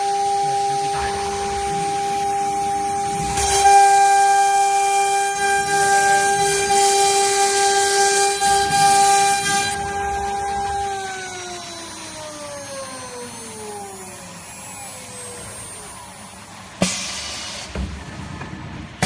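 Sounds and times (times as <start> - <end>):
router spindle whining: 0.0 - 16.8
hiss: 16.8 - 17.8.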